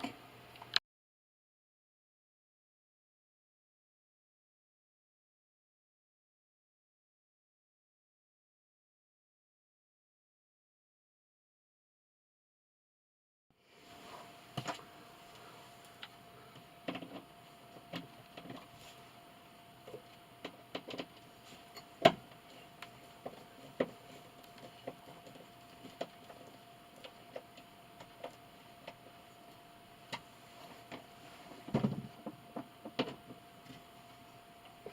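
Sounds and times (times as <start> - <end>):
faint steady hum: 0.0 - 0.8, 13.6 - 34.9.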